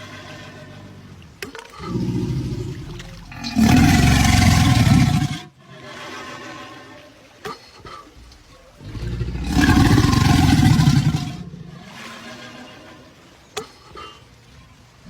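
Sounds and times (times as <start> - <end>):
crocodile bellowing: 0.0 - 7.0, 8.1 - 13.2.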